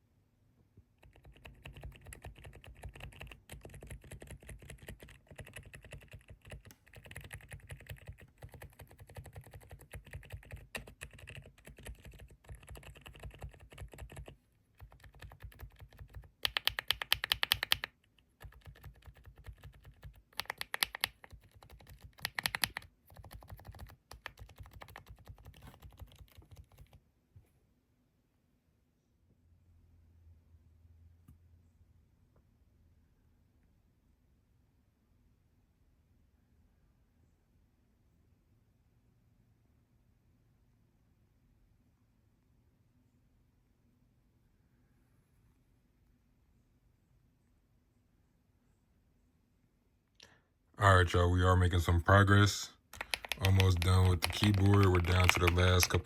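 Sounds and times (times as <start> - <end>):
mechanical keyboard typing: 1.0 - 27.0, 52.9 - 56.0.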